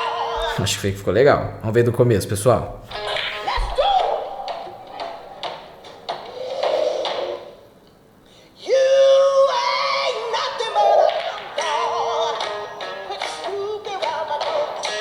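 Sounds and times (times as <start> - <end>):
music with singing voice: 0.0 - 0.7, 8.6 - 15.0.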